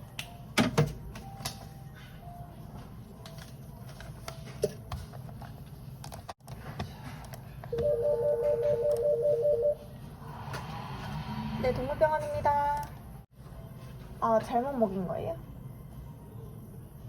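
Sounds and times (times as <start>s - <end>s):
desk telephone ringing: 7.7s - 9.8s.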